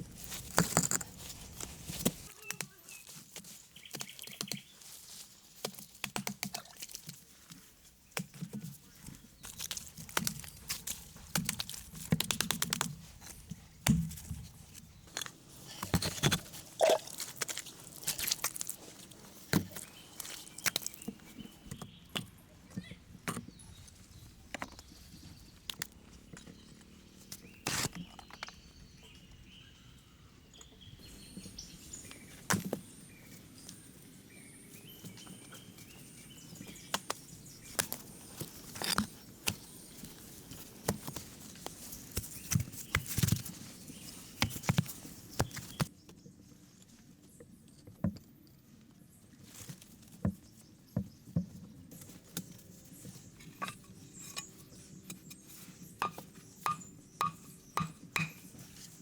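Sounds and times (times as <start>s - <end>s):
birds chirping faintly: 18.8s - 59.0s
sharp knocks and taps: 56.0s - 58.4s.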